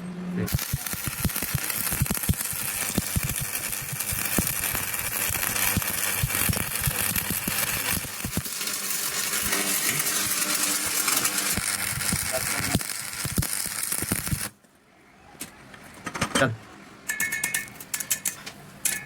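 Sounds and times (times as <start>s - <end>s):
welding arc crackling: 0.5s - 14.6s.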